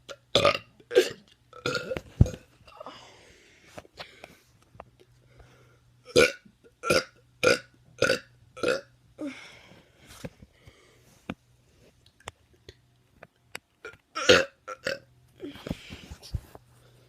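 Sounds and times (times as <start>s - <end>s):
person burping: 0.0s - 2.4s, 6.1s - 9.3s, 13.8s - 15.1s.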